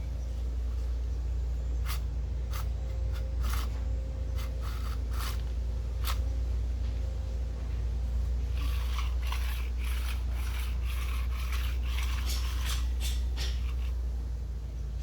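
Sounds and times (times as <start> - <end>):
metal parts scraping and clicking: 8.4 - 14.0.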